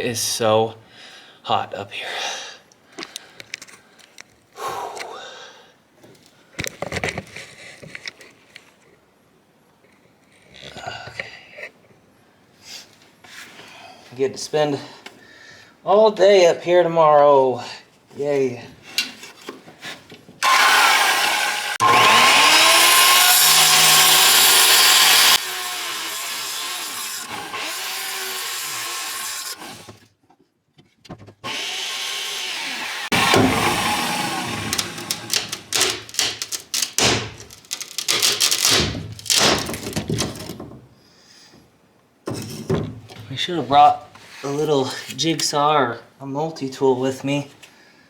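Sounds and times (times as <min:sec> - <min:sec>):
power saw cutting plywood: 0:20.4 - 0:30.0, 0:31.4 - 0:38.8
plywood knocks and scrapes: 0:33.1 - 0:40.9.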